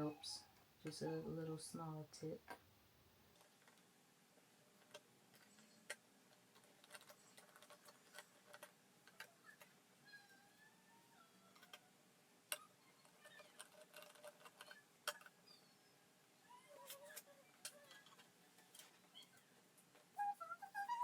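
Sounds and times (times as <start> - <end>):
plastic parts clicking and tapping: 3.3 - 3.9, 4.8 - 9.8, 11.5 - 11.9, 12.5 - 15.4, 16.9 - 20.1.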